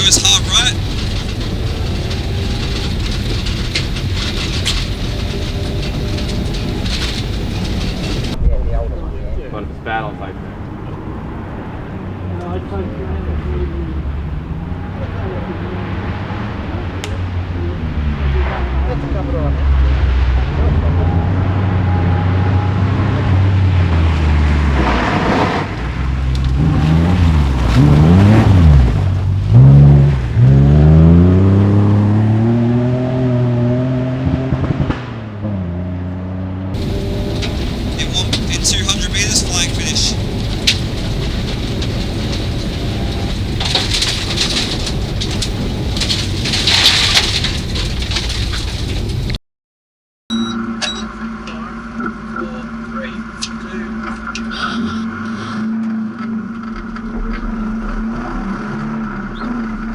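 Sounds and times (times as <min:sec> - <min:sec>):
rally car engine revving: 0:00.0 - 0:08.4, 0:09.6 - 0:49.3, 0:51.1 - 0:59.9
rush of gravel: 0:36.8 - 0:49.2.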